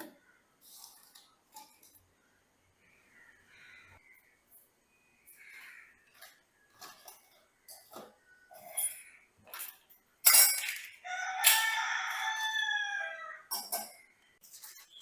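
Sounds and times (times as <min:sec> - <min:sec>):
rooster crowing: 0:11.0 - 0:13.5.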